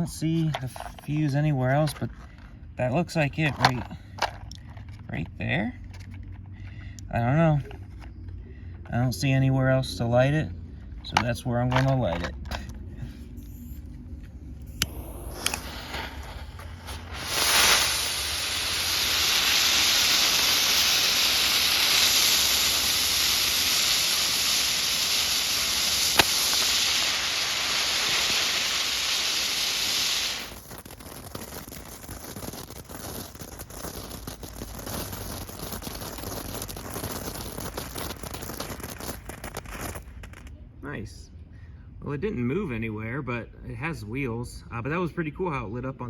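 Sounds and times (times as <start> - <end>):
firework spraying sparks with hiss: 13.4 - 40.4.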